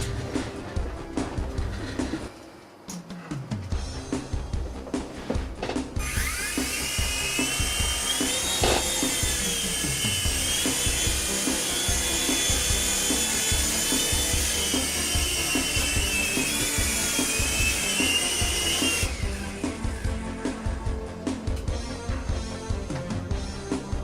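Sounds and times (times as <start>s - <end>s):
music with a steady beat: 0.0s - 2.3s, 2.9s - 24.0s
toy helicopter motors whining: 6.0s - 20.2s.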